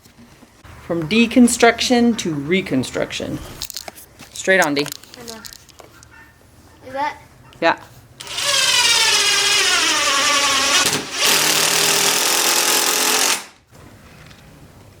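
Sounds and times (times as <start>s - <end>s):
power tool running: 8.2s - 13.6s.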